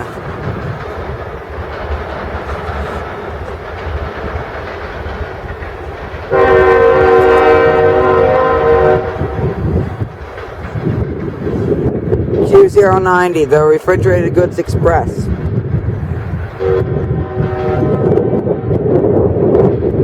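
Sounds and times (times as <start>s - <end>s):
freight train rumble and clatter: 0.0s - 20.0s
locomotive air horn blast: 6.3s - 9.6s, 16.6s - 18.1s.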